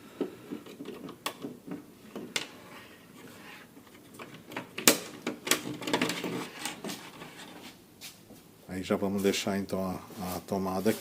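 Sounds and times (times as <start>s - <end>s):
clicks of handling wiring: 3.9s - 7.0s.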